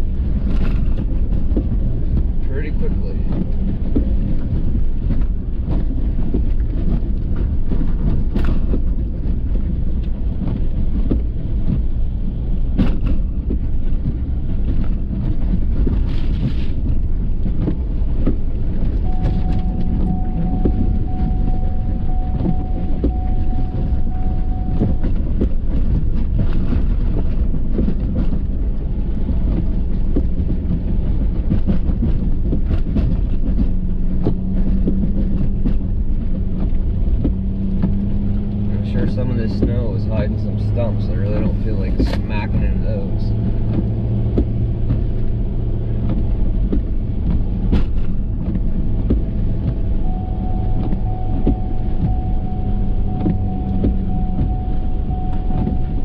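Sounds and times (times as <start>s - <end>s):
pickup truck engine rumble: 0.0s - 56.0s
steady high tone: 19.0s - 25.4s, 50.0s - 56.0s.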